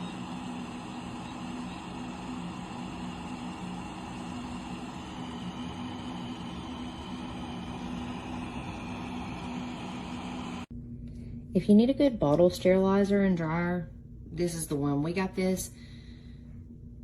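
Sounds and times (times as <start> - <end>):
appliance humming and hissing: 0.0 - 11.5.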